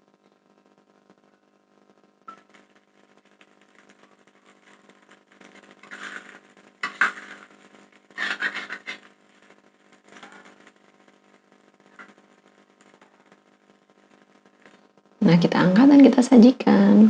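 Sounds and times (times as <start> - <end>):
steady low hum: 0.0 - 17.0
metal spatula scraping a wok: 5.6 - 9.1.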